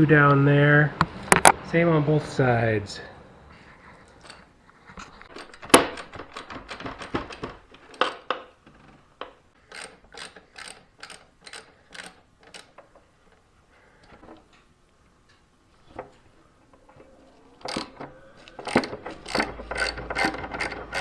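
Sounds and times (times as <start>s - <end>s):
socket ratchet clicking: 5.3s - 8.3s, 9.7s - 12.9s.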